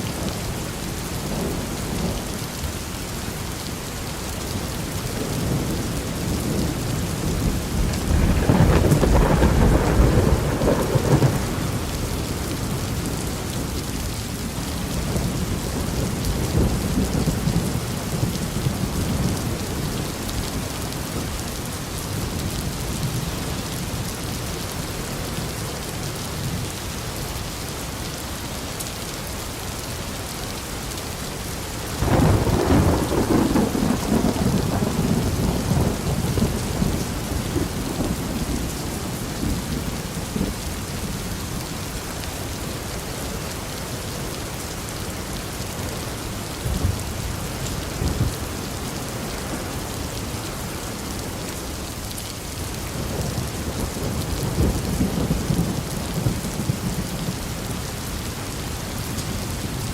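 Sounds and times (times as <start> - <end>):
steady rain falling: 0.0 - 59.9
thunder rumbling: 5.3 - 13.3, 32.0 - 41.2.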